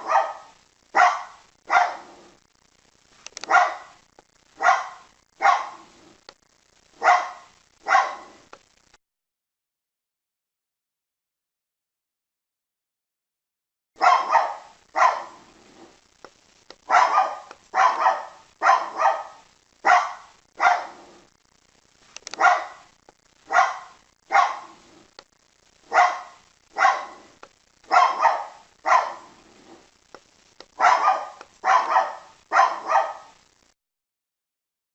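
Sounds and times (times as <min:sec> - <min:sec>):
dog barking: 0:00.0 - 0:02.2, 0:03.4 - 0:04.0, 0:04.6 - 0:05.9, 0:07.0 - 0:08.4, 0:14.0 - 0:15.4, 0:16.9 - 0:21.1, 0:22.3 - 0:22.9, 0:23.5 - 0:24.8, 0:25.8 - 0:27.3, 0:27.9 - 0:29.4, 0:30.8 - 0:33.4.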